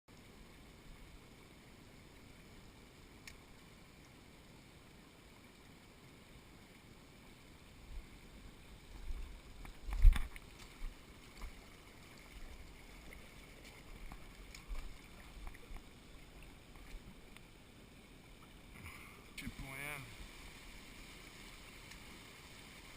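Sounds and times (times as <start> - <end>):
rushing mountain torrent: 18.7 - 22.9.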